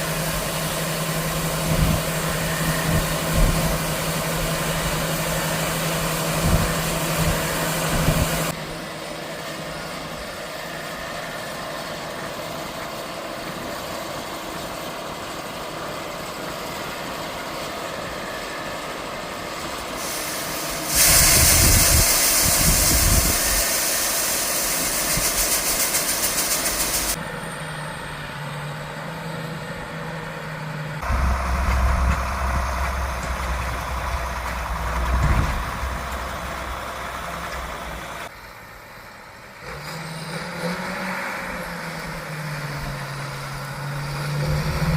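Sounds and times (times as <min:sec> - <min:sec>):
harvest machinery engines running: 0:00.0 - 0:39.6
strong hiss: 0:19.7 - 0:27.2, 0:31.0 - 0:38.3.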